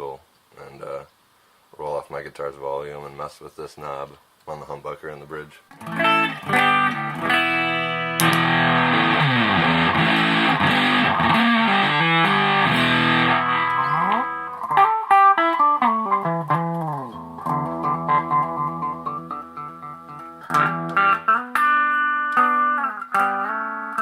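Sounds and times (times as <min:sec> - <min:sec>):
fuzz electric guitar: 0:05.7 - 0:24.0.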